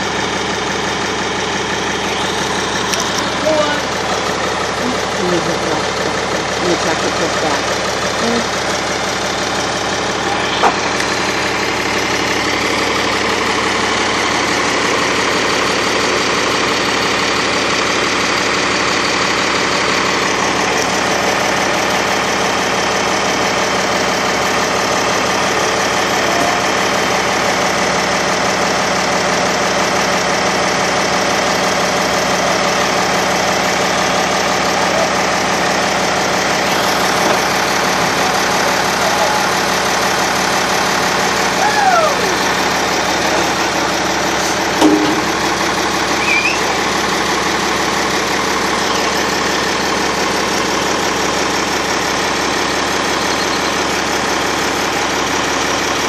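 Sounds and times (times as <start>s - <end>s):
engine idling: 0.0s - 56.0s.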